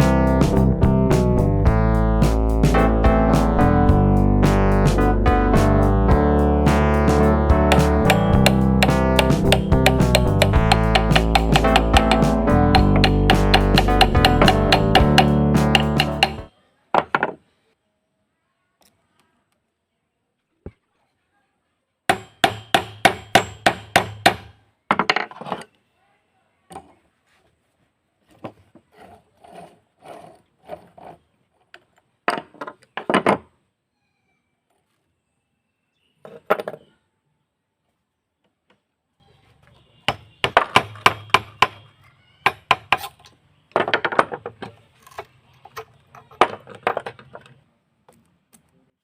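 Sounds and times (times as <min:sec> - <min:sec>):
hammer tapping on metal: 0:07.7 - 0:16.5, 0:22.1 - 0:24.5.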